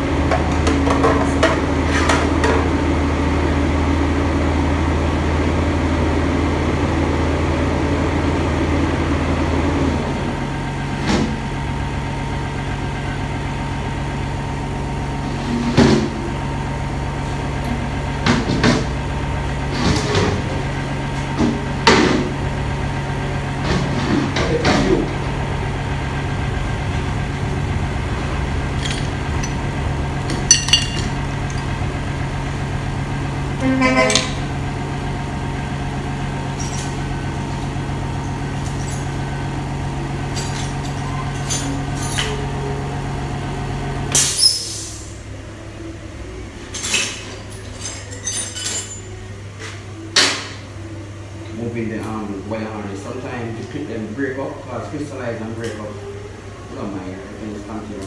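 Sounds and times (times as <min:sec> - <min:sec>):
low machine hum: 0:00.0 - 0:58.0
tools clanking on metal: 0:28.8 - 0:29.6, 0:30.3 - 0:31.8, 0:40.3 - 0:42.4, 0:46.7 - 0:49.2.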